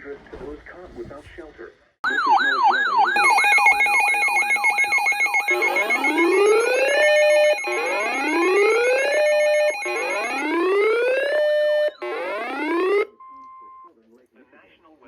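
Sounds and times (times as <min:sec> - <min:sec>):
electronic siren yelping and whooping: 0:02.0 - 0:13.2
pulsing beep tones: 0:02.1 - 0:13.9.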